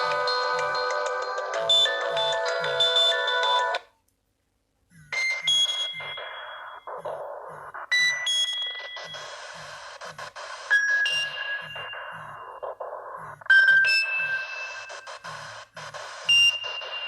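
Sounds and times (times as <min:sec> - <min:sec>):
polyphonic phone ringtone: 0:00.0 - 0:03.8.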